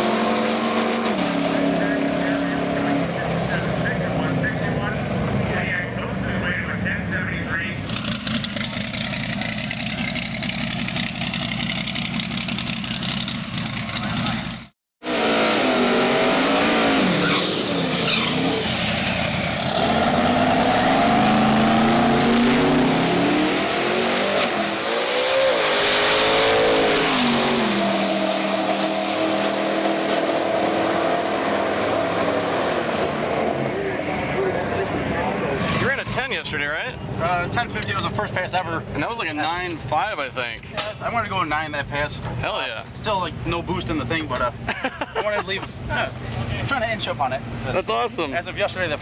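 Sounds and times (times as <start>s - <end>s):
drag car engine revving: 0.0s - 7.0s, 7.7s - 39.0s.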